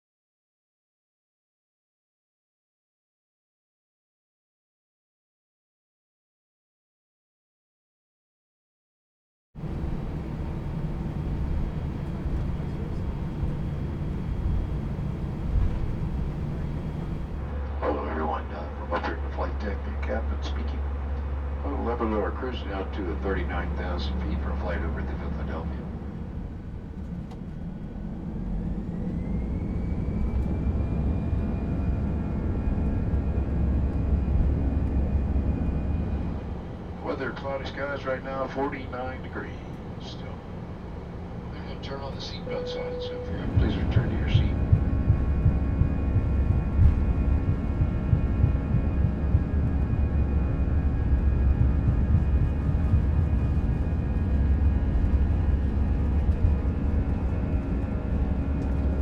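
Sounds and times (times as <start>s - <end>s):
jet engines spooling up: 9.6s - 17.6s, 23.4s - 59.0s
heavy low rumble: 9.6s - 17.8s, 23.0s - 59.0s
rising engine whine: 9.6s - 17.8s, 23.1s - 59.0s.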